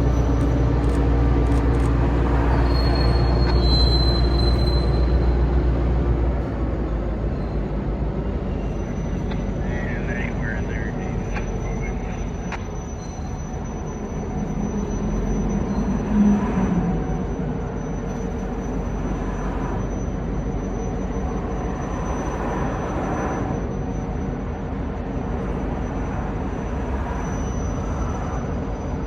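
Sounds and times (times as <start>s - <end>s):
low hum: 0.0s - 3.4s
diesel train rumble: 0.0s - 29.0s.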